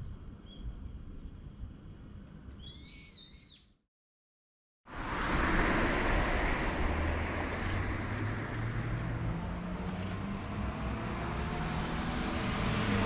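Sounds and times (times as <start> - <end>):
small bird chirping: 0.0 - 0.8, 2.5 - 3.8
rushing background with hum: 4.9 - 13.0.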